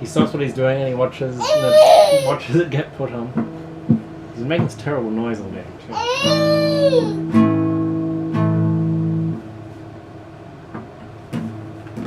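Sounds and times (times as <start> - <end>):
acoustic guitar strums: 6.3 - 9.4.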